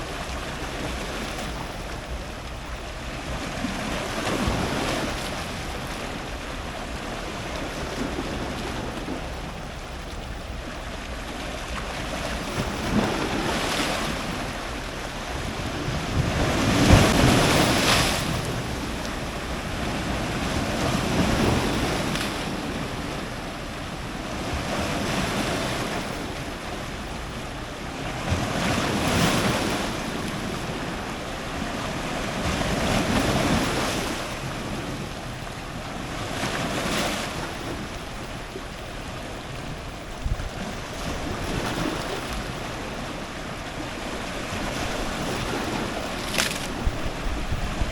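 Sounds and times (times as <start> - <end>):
surf breaking on rocks: 44.0 - 47.9.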